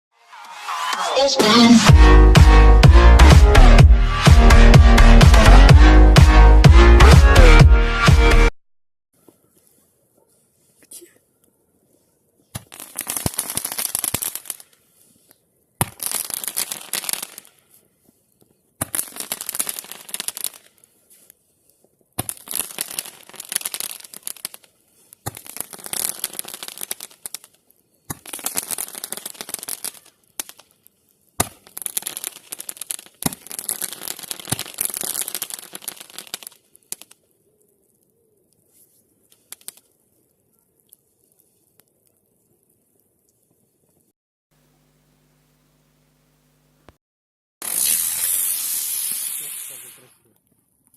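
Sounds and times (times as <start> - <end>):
crackling hiss: 9.2 - 47.0, 47.6 - 50.9
roman candle shots popping: 12.5 - 14.8, 15.8 - 17.6, 18.8 - 20.8, 22.2 - 30.8, 31.4 - 37.2, 47.6 - 50.4.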